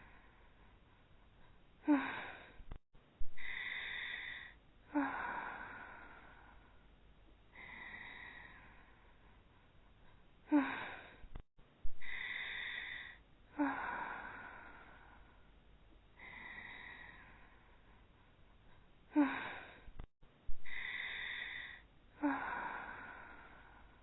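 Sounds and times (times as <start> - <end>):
exaggerated cartoon snoring: 20.7 - 21.8.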